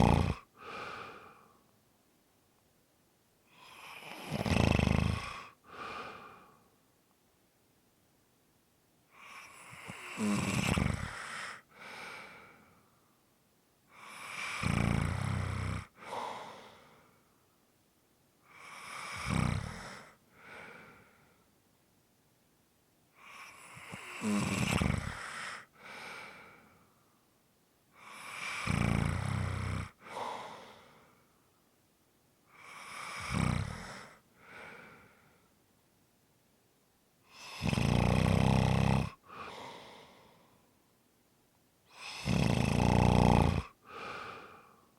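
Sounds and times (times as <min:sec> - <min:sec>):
person snoring: 0:00.0 - 0:01.5, 0:03.5 - 0:06.6, 0:09.1 - 0:12.6, 0:13.9 - 0:16.8, 0:18.5 - 0:21.0, 0:23.2 - 0:26.6, 0:28.0 - 0:30.9, 0:32.5 - 0:35.1, 0:37.3 - 0:40.4, 0:41.9 - 0:44.8
soft breath: 0:00.0 - 0:01.8, 0:05.3 - 0:06.8, 0:11.0 - 0:13.2, 0:15.9 - 0:17.6, 0:19.6 - 0:21.6, 0:25.0 - 0:27.3, 0:29.9 - 0:31.7, 0:33.6 - 0:35.6, 0:39.1 - 0:40.8, 0:43.7 - 0:44.9.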